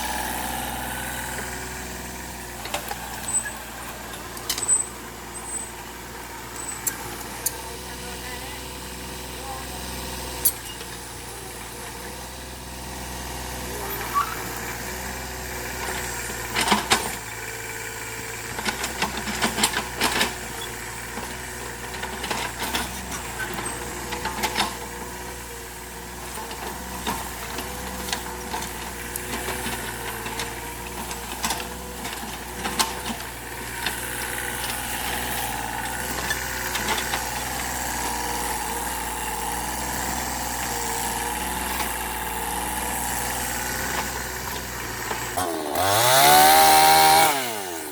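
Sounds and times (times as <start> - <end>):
excavator diesel engine running: 0.0 - 47.9
digging knocks and clanks: 18.5 - 25.2, 26.2 - 47.3.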